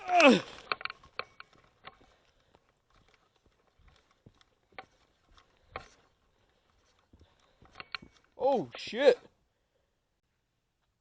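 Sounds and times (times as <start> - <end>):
faint clicks and knocks: 0.0 - 8.4.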